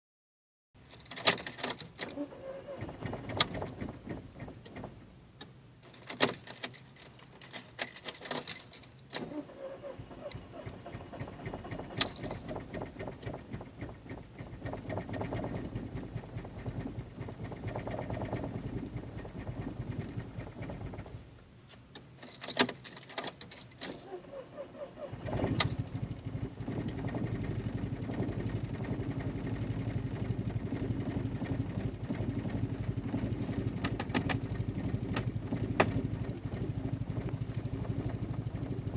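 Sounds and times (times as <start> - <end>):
car engine cranking: 0.8 - 38.9
car engine idling: 2.1 - 5.8, 9.0 - 21.6, 23.8 - 38.9
keys jangling: 5.8 - 9.0, 22.2 - 24.1.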